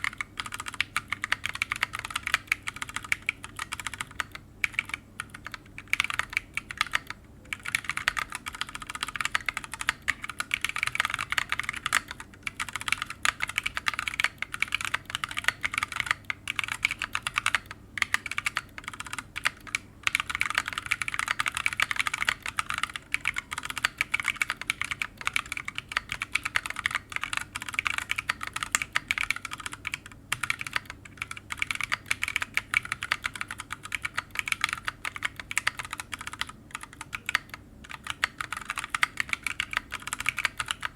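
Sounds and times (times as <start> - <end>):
fast typing on mechanical keyboard: 0.0 - 40.9.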